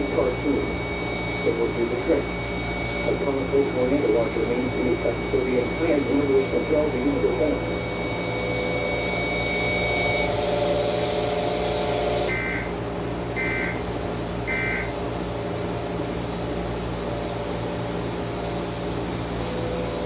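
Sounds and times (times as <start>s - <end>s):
digital data tone bursts: 0.0s - 12.7s, 14.5s - 14.9s
steady low hum: 0.0s - 20.0s.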